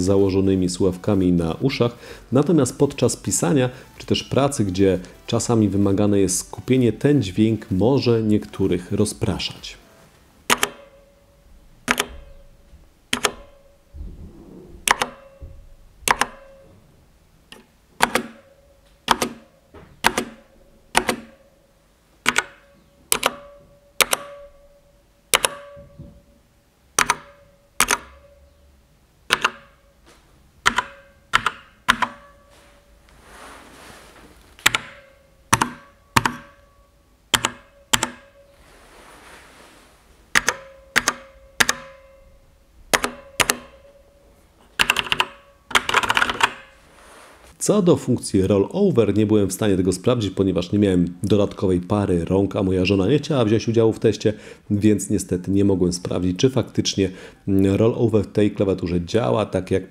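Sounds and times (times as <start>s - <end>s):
mechanical keyboard keystrokes: 10.5s - 10.9s, 11.8s - 12.2s, 13.1s - 13.6s, 14.8s - 15.2s, 16.1s - 16.5s, 17.5s - 18.4s, 19.1s - 19.4s, 20.0s - 21.4s, 22.2s - 24.4s, 25.3s - 25.7s, 27.0s - 28.2s, 29.3s - 29.7s, 30.6s - 32.2s, 34.6s - 36.6s, 37.3s - 38.3s, 40.3s - 42.0s, 42.9s - 43.8s, 44.8s - 46.7s.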